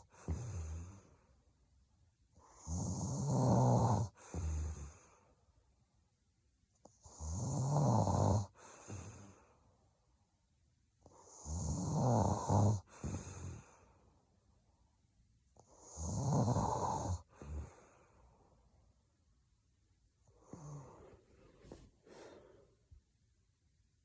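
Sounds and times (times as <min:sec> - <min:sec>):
woman snoring heavily: 0:00.0 - 0:01.2, 0:02.4 - 0:05.2, 0:07.0 - 0:09.4, 0:11.2 - 0:13.8, 0:15.7 - 0:18.0, 0:20.4 - 0:21.2.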